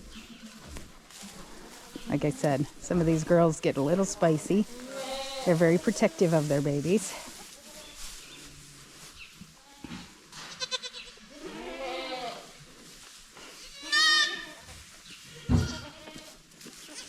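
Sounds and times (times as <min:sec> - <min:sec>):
goats bleating: 0:03.9 - 0:06.8, 0:09.6 - 0:12.6, 0:13.6 - 0:14.6, 0:15.3 - 0:17.0.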